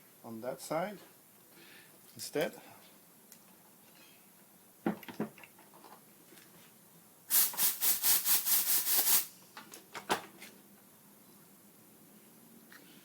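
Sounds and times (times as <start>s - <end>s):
pulsing compressed air hiss: 7.3s - 9.4s.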